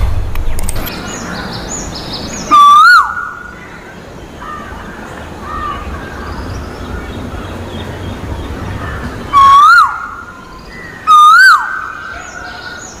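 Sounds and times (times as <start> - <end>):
background hiss: 0.0 - 13.0
bird calling whistled notes: 2.4 - 3.8, 9.2 - 13.0.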